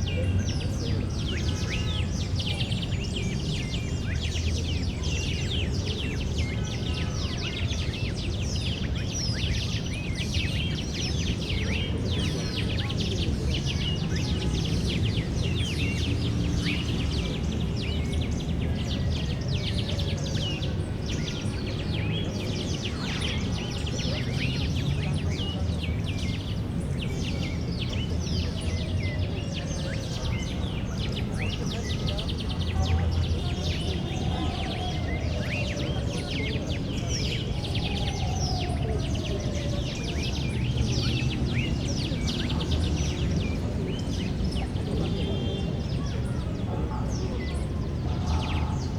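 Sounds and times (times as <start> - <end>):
small birds chirping: 0.0 - 48.9.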